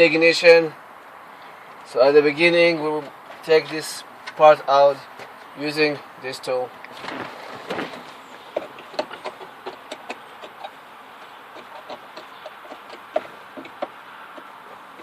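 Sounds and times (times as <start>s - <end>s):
hand tool clicking and tapping: 8.6s - 10.8s, 11.5s - 15.0s.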